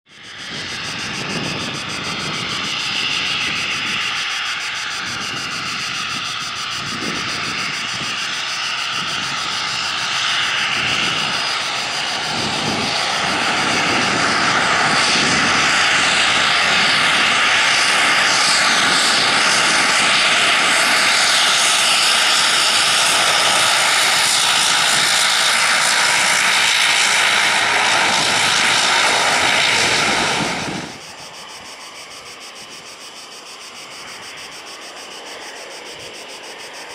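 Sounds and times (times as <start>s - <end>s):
turboprop engines droning: 0.1s - 36.9s.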